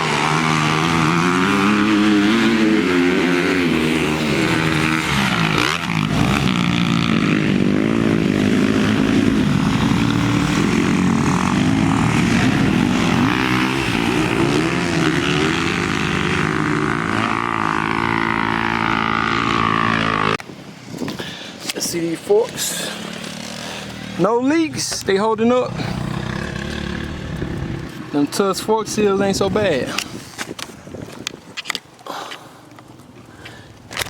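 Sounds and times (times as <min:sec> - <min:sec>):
dirt bike engine revving: 0:00.0 - 0:20.4, 0:22.6 - 0:24.4, 0:25.6 - 0:28.1.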